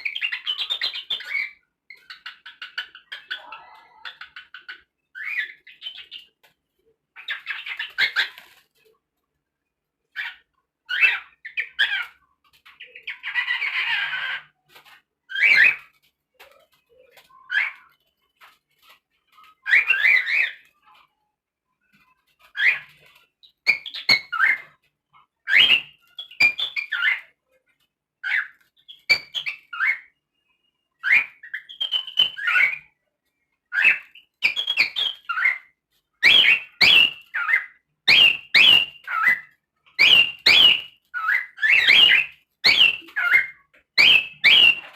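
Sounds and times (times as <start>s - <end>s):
cockatiel chirps and whistles: 25.4s - 27.3s, 31.0s - 32.9s, 33.7s - 44.9s.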